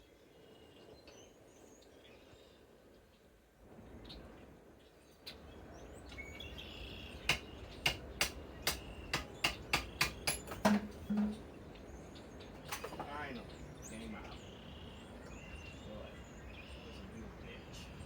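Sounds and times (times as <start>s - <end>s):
hammer striking metal: 7.3s - 11.4s.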